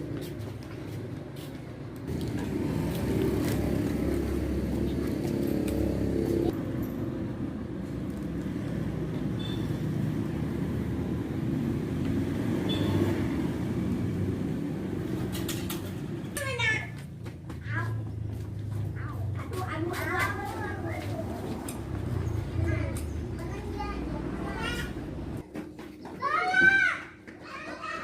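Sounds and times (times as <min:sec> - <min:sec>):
engine running: 0:02.1 - 0:16.2.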